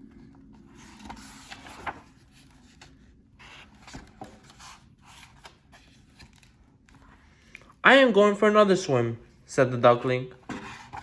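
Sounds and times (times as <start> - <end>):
book page turning: 0.4 - 7.1.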